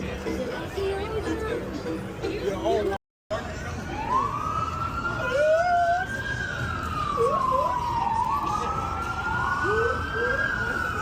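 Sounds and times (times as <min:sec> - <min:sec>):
steady traffic noise: 0:00.0 - 0:11.0
emergency siren wailing: 0:03.6 - 0:11.0
second wailing siren: 0:03.9 - 0:11.0.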